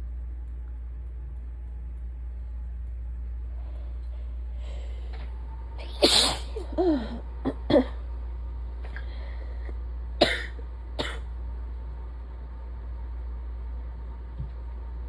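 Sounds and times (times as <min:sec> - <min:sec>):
person sneezing: 0:05.8 - 0:08.0.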